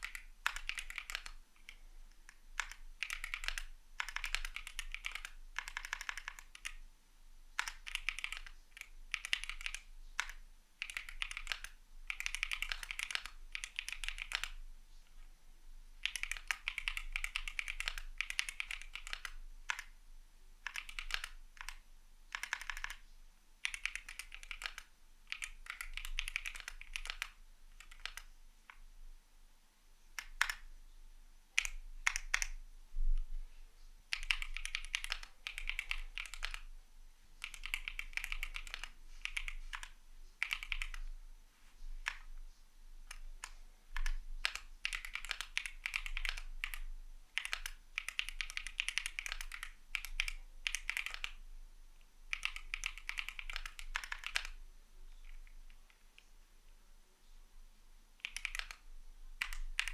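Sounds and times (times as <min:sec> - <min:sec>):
mechanical keyboard typing: 0:00.0 - 0:06.8, 0:07.6 - 0:14.6, 0:16.0 - 0:20.0, 0:20.6 - 0:23.0, 0:23.6 - 0:28.3, 0:30.2 - 0:30.7, 0:31.6 - 0:32.6, 0:34.1 - 0:36.7, 0:37.4 - 0:41.1, 0:42.0 - 0:42.3, 0:43.1 - 0:51.4, 0:52.3 - 0:54.6, 0:58.2 - 0:58.8, 0:59.4 - 0:59.9.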